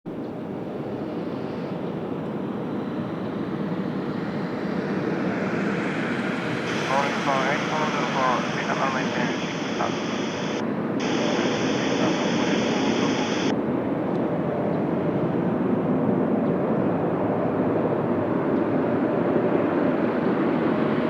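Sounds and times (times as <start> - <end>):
jet engines rushing: 3.0 - 13.5
high hiss: 6.7 - 13.5.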